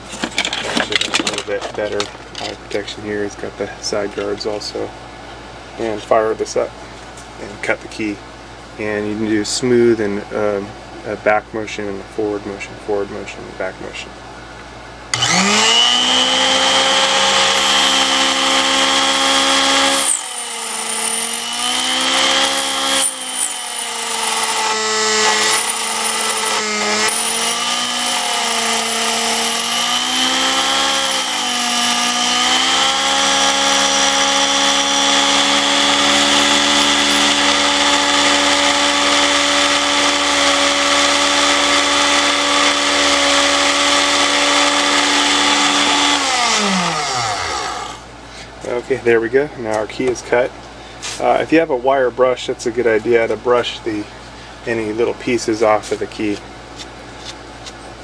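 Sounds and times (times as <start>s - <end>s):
key cutting machine whine: 15.2s - 48.0s.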